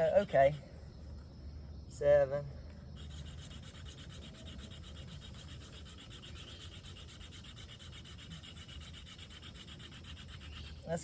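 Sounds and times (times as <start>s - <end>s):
wooden spindle rubbing on fireboard: 3.0s - 10.9s.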